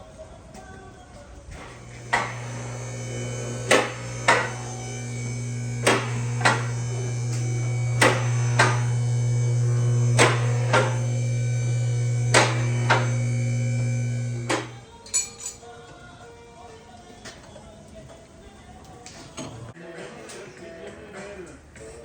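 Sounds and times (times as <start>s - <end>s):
low drone: 1.8s - 14.8s.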